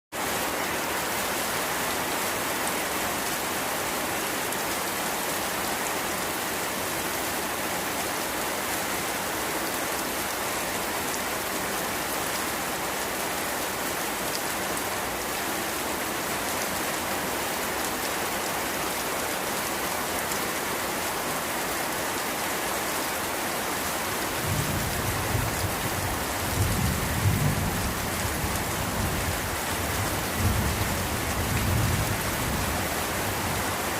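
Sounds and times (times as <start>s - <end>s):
heavy rain falling: 0.2s - 33.9s.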